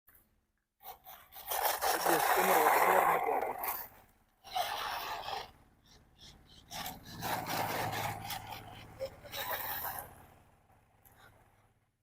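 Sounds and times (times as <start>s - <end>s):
rc car scraping over rough ground: 0.8s - 10.4s.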